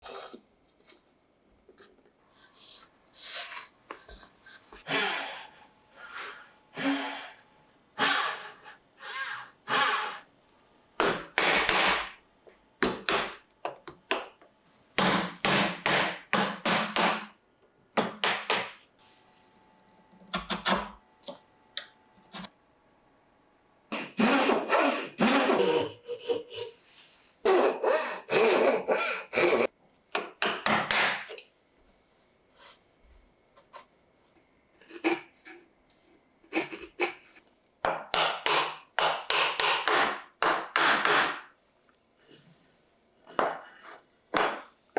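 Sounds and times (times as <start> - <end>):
hand tool rasping wood: 24.0 - 26.7.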